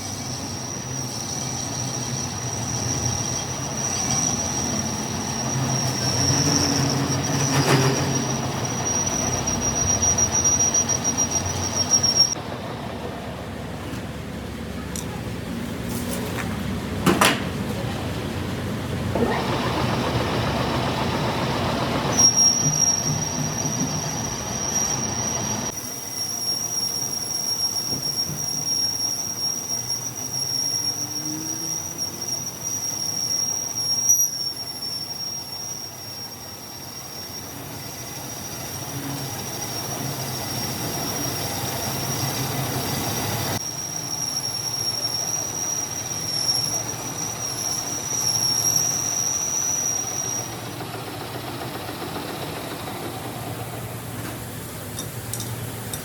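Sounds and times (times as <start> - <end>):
cutting tool squealing on metal: 0.4 - 12.4, 22.1 - 37.8.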